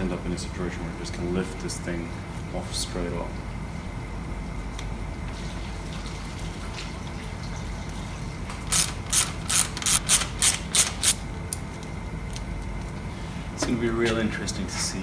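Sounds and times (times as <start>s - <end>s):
ratchet clicking: 8.7s - 11.2s.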